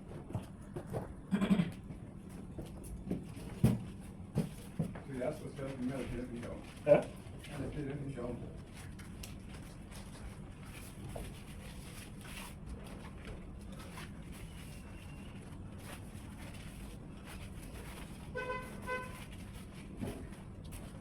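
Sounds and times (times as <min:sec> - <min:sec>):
vehicle horn toots: 0:18.3 - 0:19.3.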